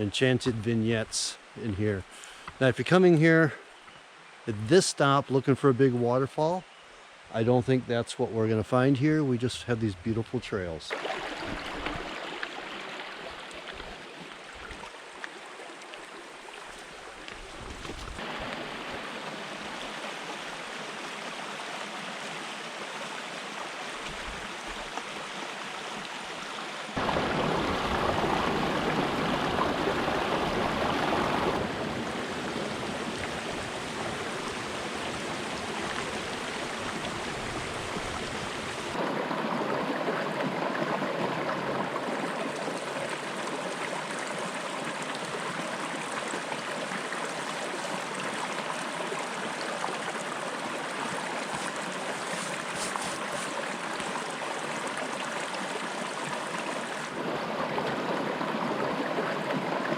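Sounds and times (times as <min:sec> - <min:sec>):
river rapids rushing: 0:27.0 - 0:39.5.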